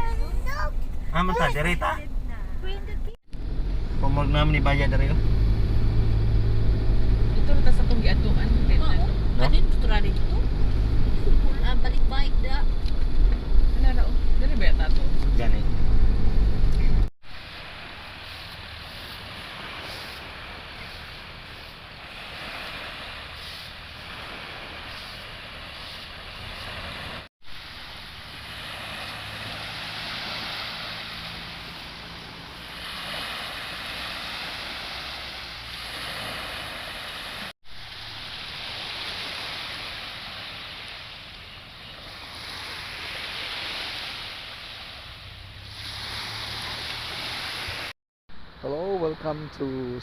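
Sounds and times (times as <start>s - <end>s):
sea waves breaking on beach: 17.2s - 48.0s.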